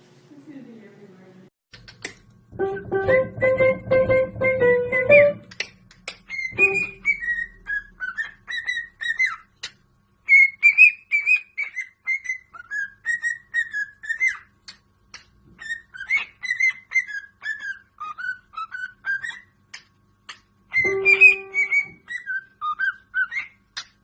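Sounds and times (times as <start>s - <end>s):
bird whistling a melody: 6.3s - 9.5s, 10.2s - 14.5s, 15.6s - 19.5s, 20.7s - 23.9s.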